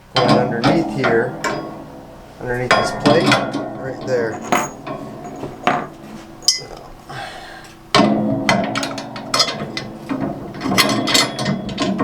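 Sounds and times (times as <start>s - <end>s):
metal parts clanking: 2.7s - 6.8s.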